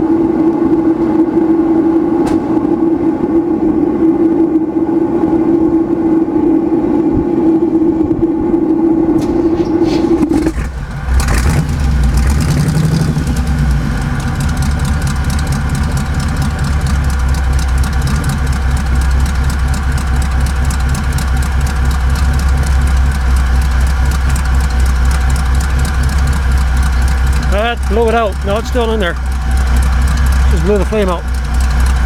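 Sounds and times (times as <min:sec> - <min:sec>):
steady whine: 0:00.0 - 0:32.0
truck engine starting and idling: 0:06.5 - 0:32.0.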